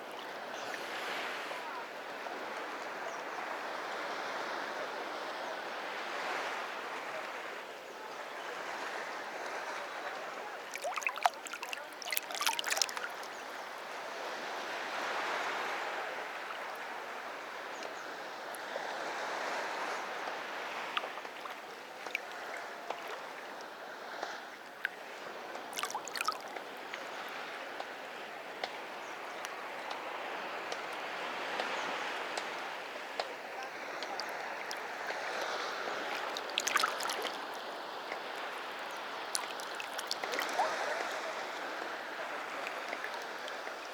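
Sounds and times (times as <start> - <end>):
sea waves breaking on beach: 8.6 - 29.0, 29.6 - 43.9.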